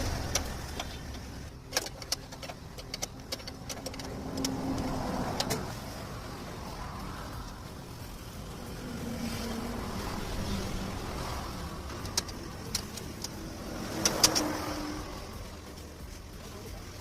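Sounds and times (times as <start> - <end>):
metallic clicks and clinks: 0.0 - 5.8, 11.2 - 17.0
vehicle engine rumble: 0.0 - 17.0.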